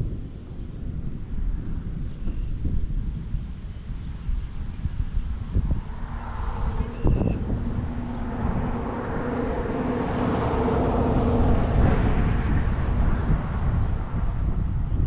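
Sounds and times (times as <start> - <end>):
vehicle humming: 0.0 - 15.0
wind buffeting microphone: 0.0 - 15.0
rushing noise: 4.2 - 15.0.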